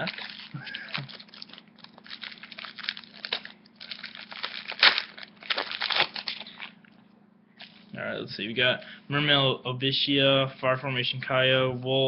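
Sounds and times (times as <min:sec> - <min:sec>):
foil wrapper crinkling and tearing: 0:00.0 - 0:06.8
faint steady hum: 0:00.0 - 0:12.0.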